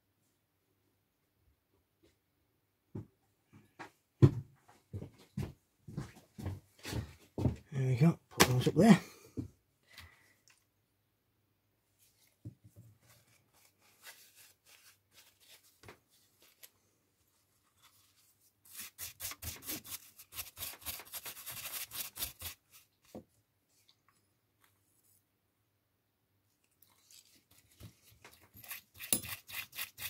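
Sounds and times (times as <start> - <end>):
brush scrubbing circuit board: 18.7 - 22.6, 28.6 - 30.0.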